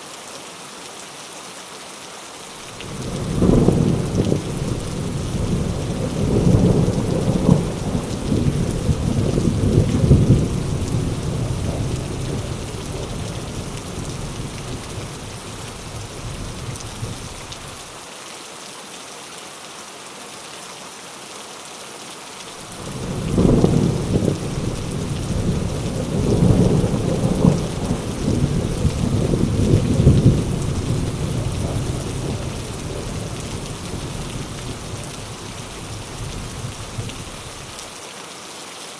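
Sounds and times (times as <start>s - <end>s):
heavy rain pouring: 0.0s - 18.4s, 22.2s - 38.9s
thunder rumbling: 2.7s - 17.9s, 22.7s - 37.8s.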